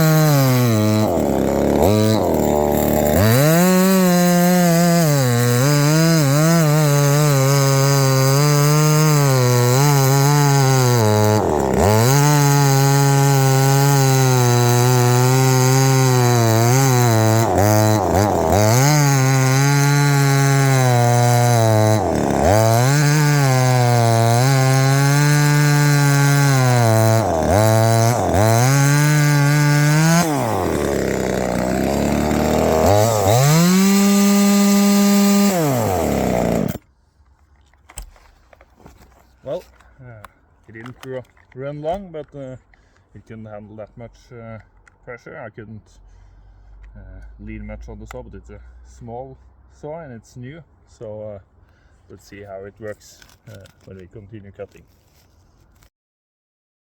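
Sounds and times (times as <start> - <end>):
chainsaw cutting wood: 0.0 - 36.9, 37.8 - 39.9.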